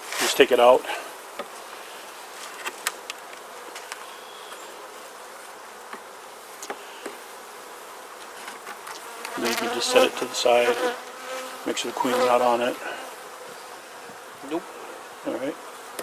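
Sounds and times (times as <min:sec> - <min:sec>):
honeybees buzzing: 0:00.4 - 0:16.0.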